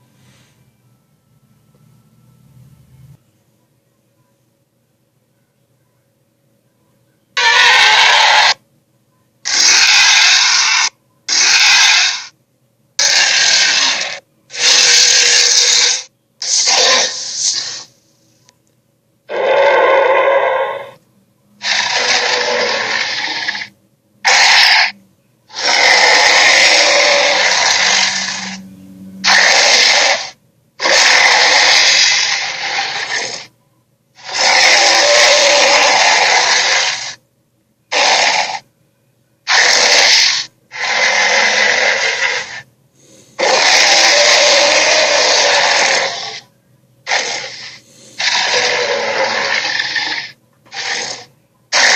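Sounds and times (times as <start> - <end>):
creature screech: 7.4 - 8.6, 9.5 - 12.3, 13.0 - 17.9, 19.3 - 21.0, 21.6 - 28.6, 29.2 - 33.5, 34.2 - 37.2, 37.9 - 38.6, 39.5 - 42.6, 43.4 - 46.4, 47.1 - 51.9
creature roars and hisses: 9.5 - 12.3, 13.0 - 17.9, 21.6 - 23.7, 24.3 - 24.9, 25.5 - 28.6, 29.2 - 33.5, 34.2 - 37.2, 39.5 - 42.6, 43.4 - 46.4, 47.1 - 51.9.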